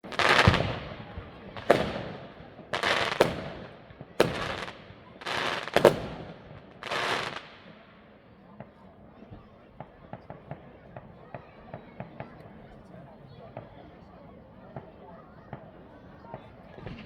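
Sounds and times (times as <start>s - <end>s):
fireworks bangs: 0.0s - 8.0s
fireworks hissing bursts: 0.0s - 8.0s.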